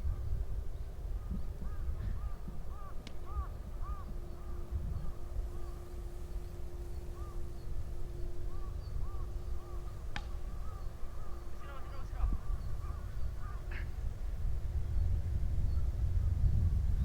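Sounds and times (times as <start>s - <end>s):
flock of birds calling: 0.0s - 14.4s
steady hum: 0.0s - 17.0s
sharp tick: 3.0s - 3.3s, 10.1s - 10.5s.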